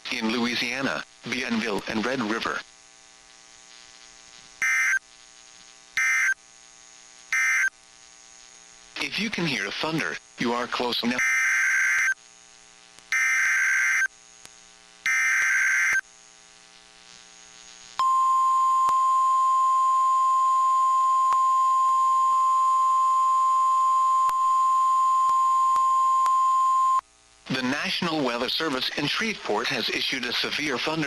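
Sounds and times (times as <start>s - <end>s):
steady warning alarm tone: 4.6s - 5.0s, 6.0s - 6.4s, 7.3s - 7.7s, 11.2s - 12.2s, 13.1s - 14.1s, 15.0s - 16.0s
digital header tones: 6.0s - 6.4s.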